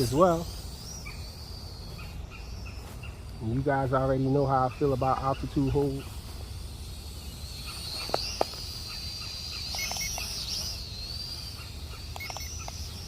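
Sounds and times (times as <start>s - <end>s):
toy drone motors whining: 0.0s - 13.0s
sharp clicks: 9.6s - 10.8s, 12.0s - 13.0s.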